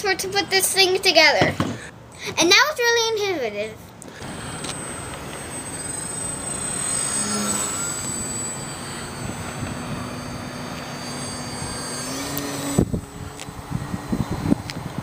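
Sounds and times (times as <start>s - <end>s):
low rising tone: 4.2s - 15.0s
model airplane motor whine: 4.2s - 15.0s
steady noisy rush: 4.2s - 15.0s.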